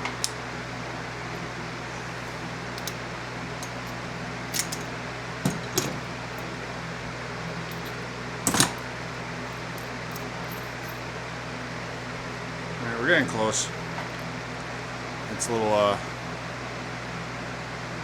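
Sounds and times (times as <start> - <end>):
steady mechanical hum: 0.0 - 18.0
hose fittings clinking: 2.7 - 6.7, 7.5 - 11.1.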